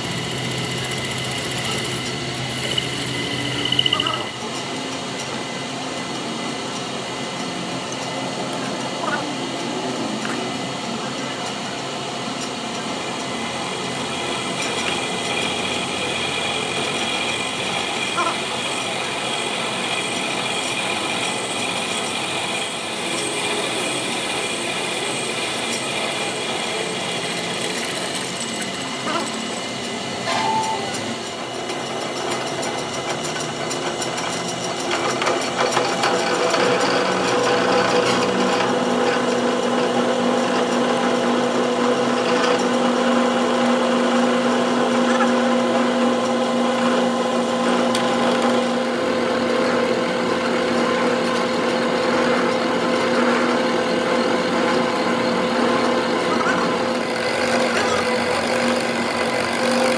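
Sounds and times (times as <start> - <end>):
steady hum: 0.0 - 4.6
workshop machinery running: 0.0 - 59.9.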